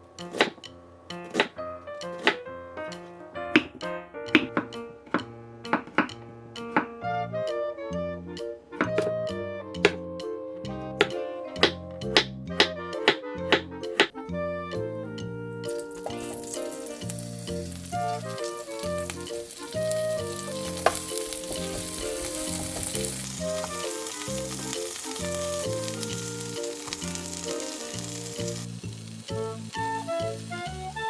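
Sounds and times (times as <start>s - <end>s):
light background music: 0.1s - 31.0s
food sizzling in a frying pan: 15.7s - 31.0s.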